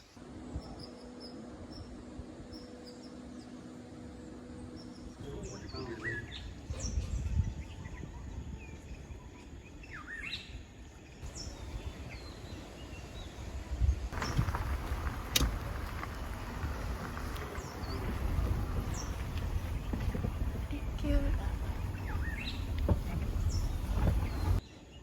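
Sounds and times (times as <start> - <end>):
low wind rumble: 0.0 - 24.6
birds chirping: 0.0 - 25.0
sharp clicks: 14.2 - 16.4.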